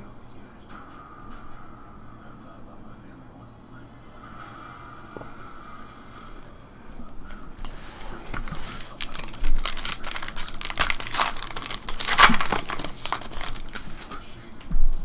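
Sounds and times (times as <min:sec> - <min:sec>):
foil wrapper tearing and crinkling: 0:08.7 - 0:14.2.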